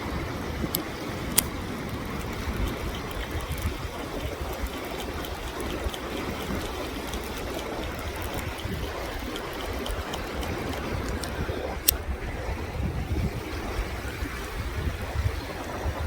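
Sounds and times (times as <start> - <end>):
river water over rocks: 0.0 - 16.0
faint ticks: 0.7 - 12.0.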